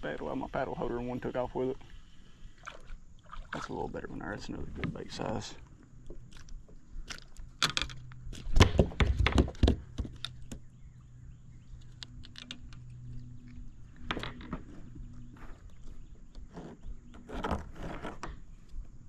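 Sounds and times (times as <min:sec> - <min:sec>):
knocks and thumps on kayak: 0:08.5 - 0:10.7.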